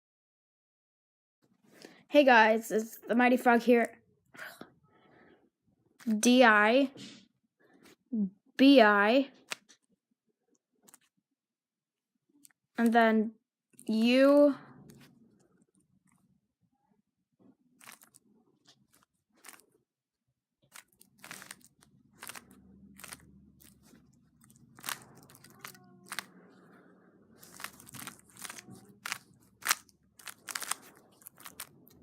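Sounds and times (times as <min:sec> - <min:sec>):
puzzle cube plastic clicks: 0:20.7 - 0:26.3, 0:27.4 - 0:32.0.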